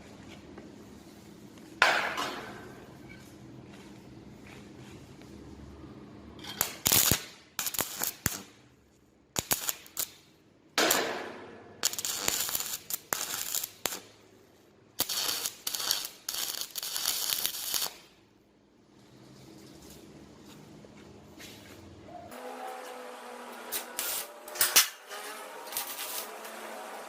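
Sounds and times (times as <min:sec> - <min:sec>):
electric arc welding crackling: 0:06.4 - 0:08.6, 0:09.4 - 0:10.2, 0:10.8 - 0:14.1, 0:15.0 - 0:18.1, 0:22.7 - 0:27.0.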